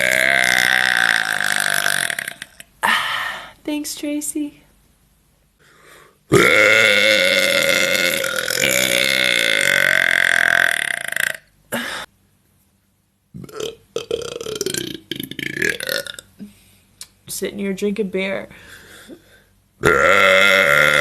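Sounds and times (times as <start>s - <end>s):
woman burping: 0.0s - 3.0s, 6.3s - 12.1s, 13.4s - 16.5s, 19.8s - 21.0s.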